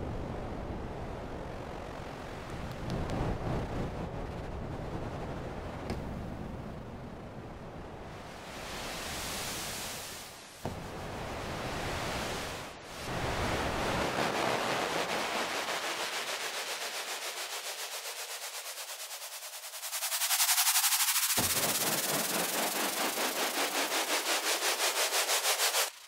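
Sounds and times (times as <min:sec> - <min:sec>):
synthesized white-noise sweep: 0:08.2 - 0:26.0.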